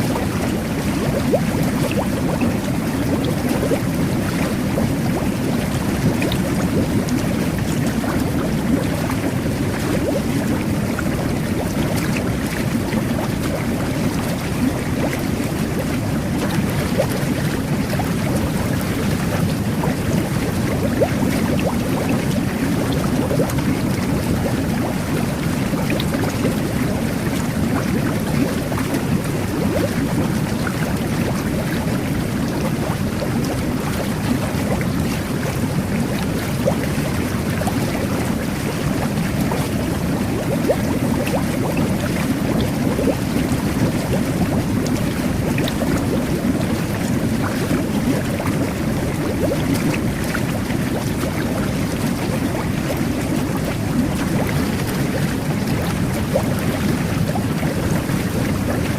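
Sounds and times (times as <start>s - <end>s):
whirlpool bath jets churning water: 0.0s - 58.9s.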